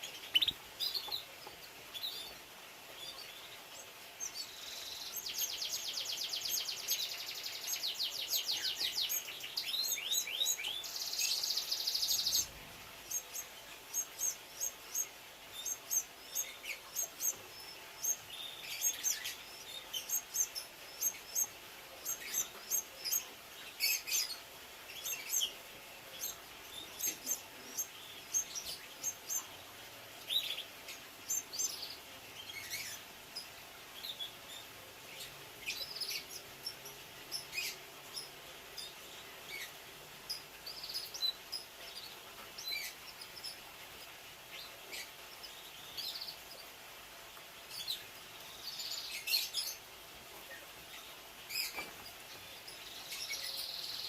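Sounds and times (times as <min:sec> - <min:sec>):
canaries chirping: 0:00.0 - 0:47.0, 0:47.6 - 0:54.0.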